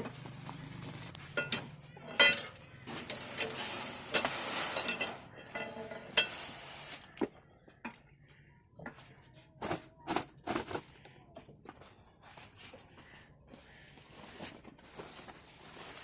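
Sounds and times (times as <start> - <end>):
metal scraping: 0.8 - 7.1.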